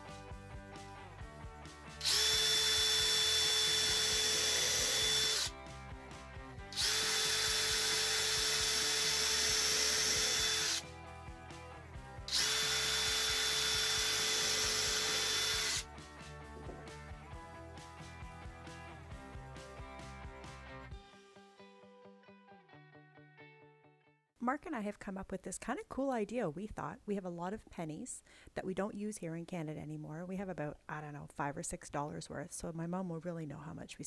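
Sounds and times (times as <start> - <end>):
power drill whining: 2.0 - 5.6, 6.7 - 10.9, 12.3 - 15.9.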